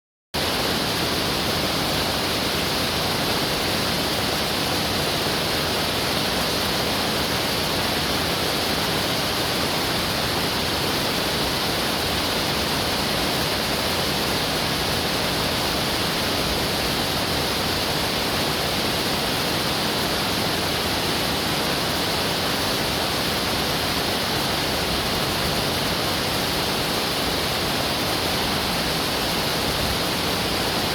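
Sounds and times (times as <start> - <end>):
waterfall rushing and splashing: 0.4 - 30.9.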